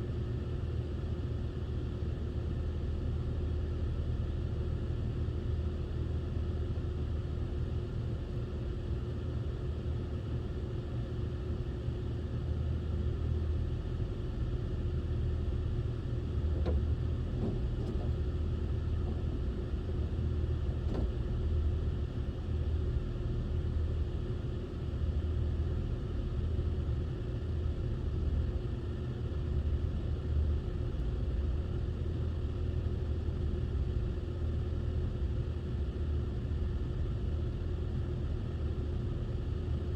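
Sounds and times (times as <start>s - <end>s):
constant hum: 0.0s - 39.9s
motor vehicle rumble: 16.0s - 23.2s.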